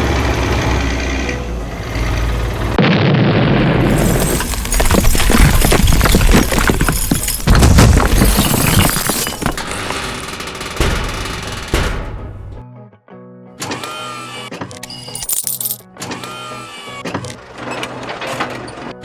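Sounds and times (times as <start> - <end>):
crashing and clattering impacts: 3.5 - 12.6.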